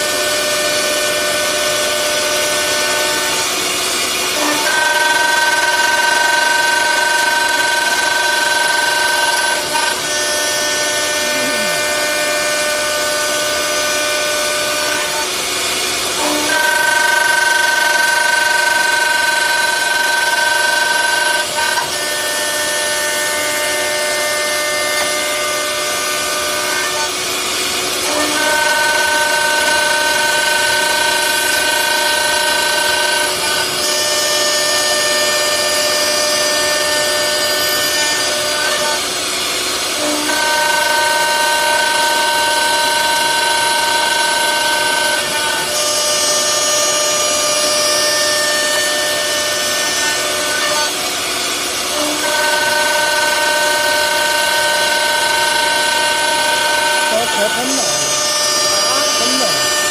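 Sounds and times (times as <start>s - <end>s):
spindle motors whining: 0.0s - 59.9s.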